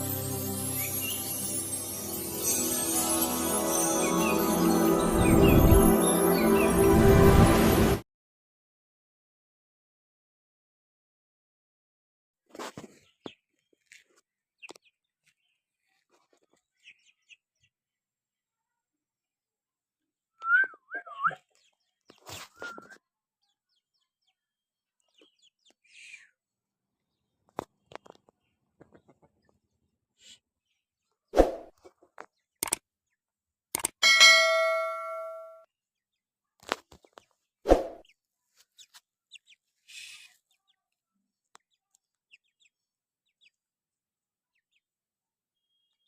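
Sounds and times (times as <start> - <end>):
single click: 32.6 - 32.8, 33.8 - 34.0
sharp clicks and taps: 33.7 - 34.0.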